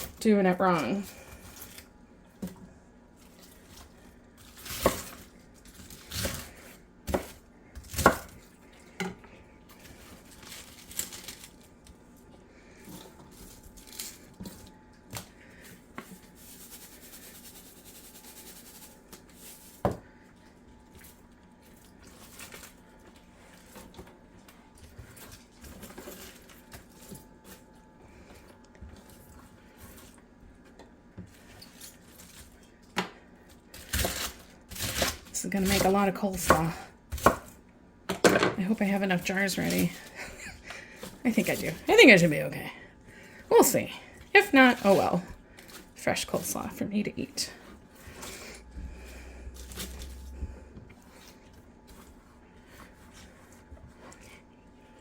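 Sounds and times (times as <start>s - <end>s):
cabbage rustling: 9.7s - 14.8s, 43.1s - 55.0s.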